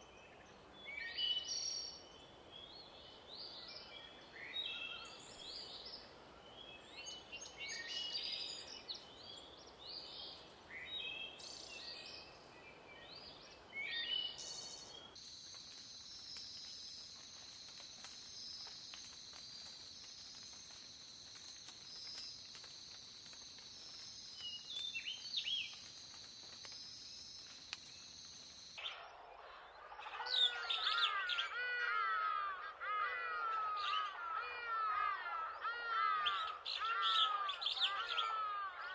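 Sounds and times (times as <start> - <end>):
birds chirping: 26.7 - 38.9.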